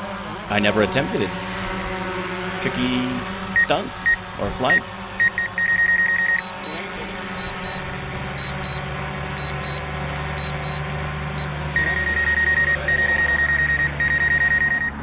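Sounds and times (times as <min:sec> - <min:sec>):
steady low hum: 0:00.0 - 0:15.0
electronic beeping: 0:03.6 - 0:15.0.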